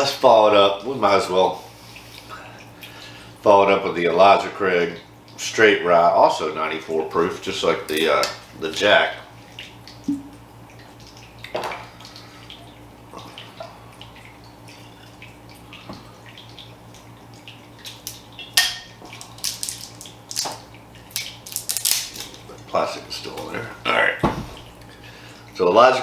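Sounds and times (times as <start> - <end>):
liquid pouring into a glass: 9.9 - 22.5
cork and seal clicks and crinkles: 19.1 - 22.4.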